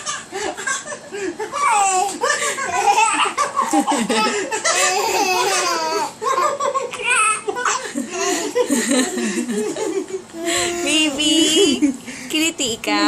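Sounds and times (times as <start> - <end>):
people laughing: 0.0 - 10.3
child giggling: 0.0 - 12.0.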